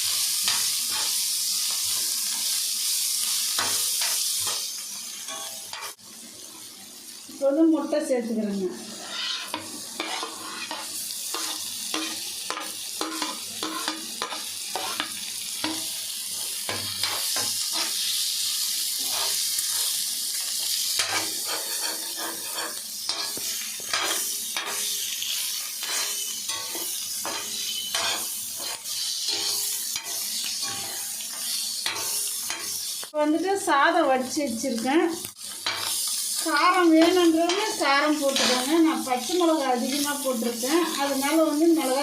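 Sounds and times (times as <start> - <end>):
eggs sizzling in oil: 0.0 - 42.0
spatula scraping and knocking pan: 9.0 - 15.9, 21.0 - 24.9, 25.8 - 33.0, 37.0 - 42.0.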